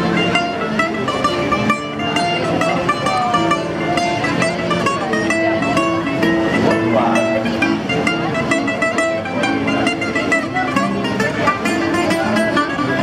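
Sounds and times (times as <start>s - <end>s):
plucked string instruments: 0.0s - 13.0s.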